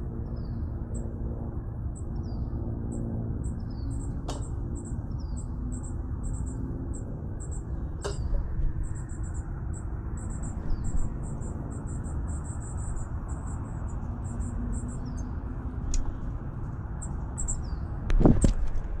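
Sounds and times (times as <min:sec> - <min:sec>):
low microphone rumble: 0:02.2 - 0:11.7.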